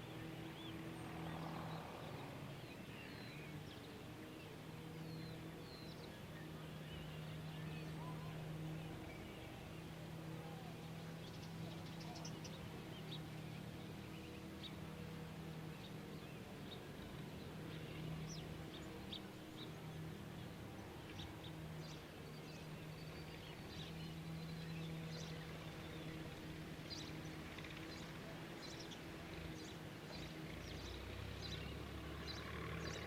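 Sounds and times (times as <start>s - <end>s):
faint birds chirping: 0.0s - 33.0s
low steady hum: 0.0s - 33.0s.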